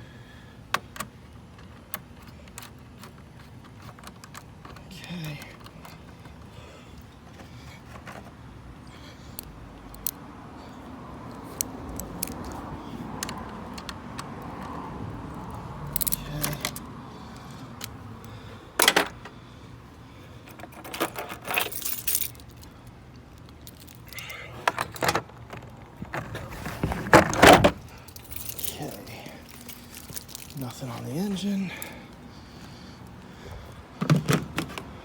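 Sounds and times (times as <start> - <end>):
keys jangling: 15.9 - 16.8, 20.4 - 22.8, 23.4 - 25.1, 27.8 - 32.1.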